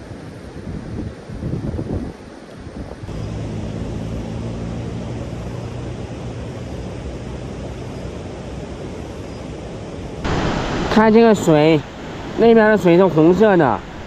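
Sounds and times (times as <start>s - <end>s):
wind or road noise: 0.0s - 14.0s
vehicle engine humming: 3.0s - 12.4s.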